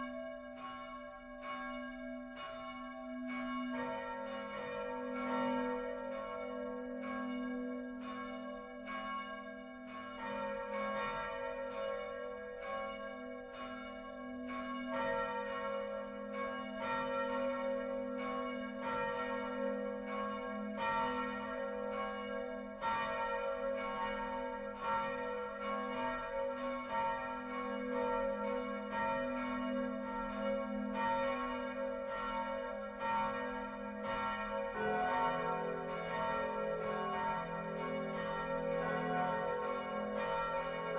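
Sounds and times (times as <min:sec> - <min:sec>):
church bells ringing: 0:00.0 - 0:40.9.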